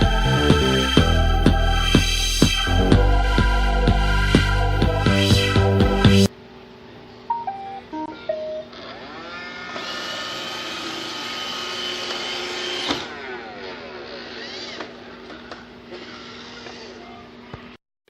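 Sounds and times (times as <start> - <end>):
robot vacuum motors whining: 8.7 - 17.8.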